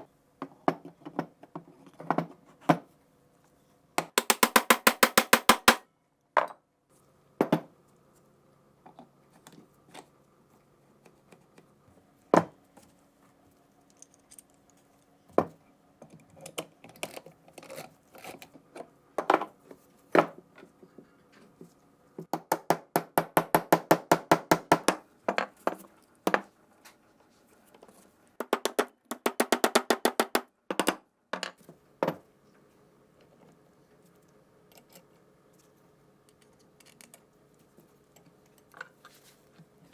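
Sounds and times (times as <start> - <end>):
faint steady hum: 0.0 - 29.1, 30.5 - 39.9
hammer tapping on metal: 4.0 - 5.8.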